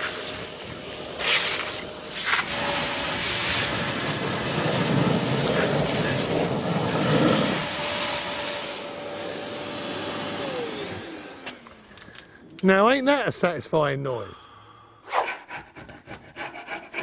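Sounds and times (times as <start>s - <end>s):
vacuum motor spinning down: 0.0s - 12.2s
wet vacuum sucking sludge: 1.0s - 11.2s.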